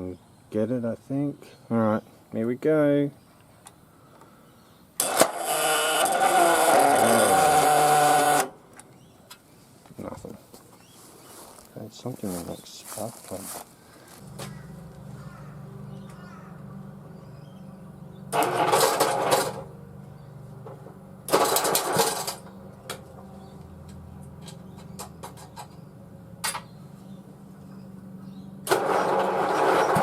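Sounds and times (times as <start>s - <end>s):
mower engine cranking: 5.0s - 8.6s, 18.1s - 19.9s, 20.6s - 25.8s, 28.6s - 30.0s
steady low hum: 13.6s - 18.4s, 22.1s - 28.7s.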